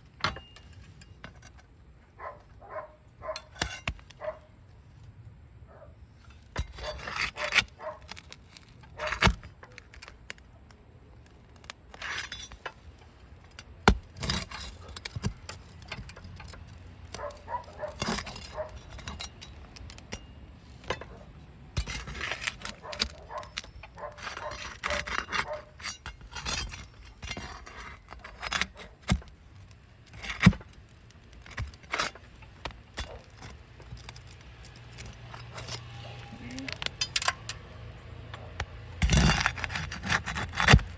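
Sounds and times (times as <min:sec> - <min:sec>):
metal bar scraping on shingles: 0:00.0 - 0:04.5, 0:06.1 - 0:10.4, 0:11.2 - 0:37.6, 0:38.3 - 0:40.9.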